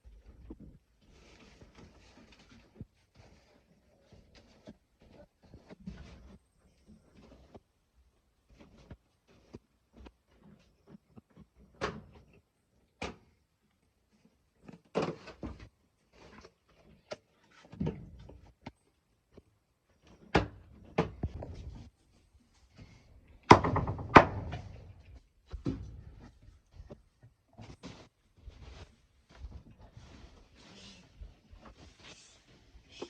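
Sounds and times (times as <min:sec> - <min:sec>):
knocks and thumps: 0:23.4 - 0:27.0.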